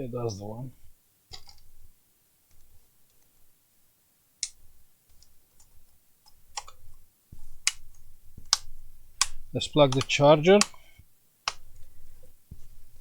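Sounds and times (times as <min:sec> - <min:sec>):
laptop keyboard clicks and taps: 0:06.3 - 0:06.8, 0:07.6 - 0:10.8.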